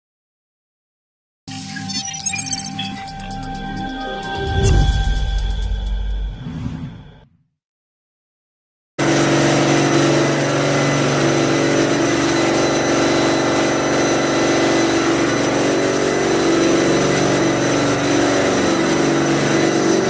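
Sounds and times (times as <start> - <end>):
pump engine running under load: 9.0 - 20.0.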